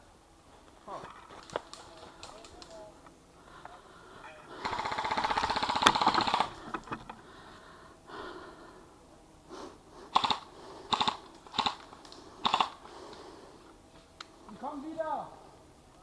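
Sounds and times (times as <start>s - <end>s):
airsoft guns firing in bursts: 4.6s - 6.6s, 10.1s - 12.9s.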